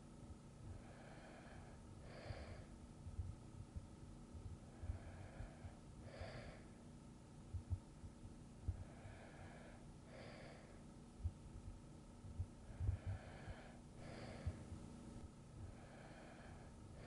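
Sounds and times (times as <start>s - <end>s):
person breathing softly: 0.6s - 3.3s, 4.6s - 6.9s, 8.6s - 10.9s, 12.6s - 17.0s
soft low thumps: 2.3s - 5.8s, 7.5s - 9.0s, 11.2s - 15.8s.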